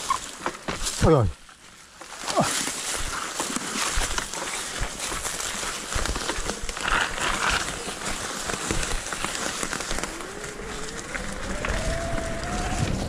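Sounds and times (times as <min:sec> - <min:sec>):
tyres crunching over dirt and stones: 0:00.0 - 0:13.0
bike knocks and rattles: 0:00.1 - 0:01.2, 0:02.8 - 0:13.0.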